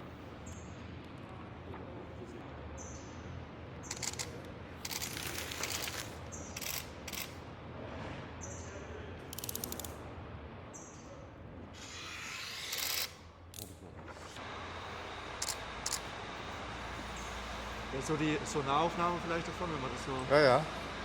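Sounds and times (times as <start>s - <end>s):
steady low hum: 0.0s - 21.0s
hissing rattling machinery: 3.9s - 7.4s, 11.8s - 21.0s.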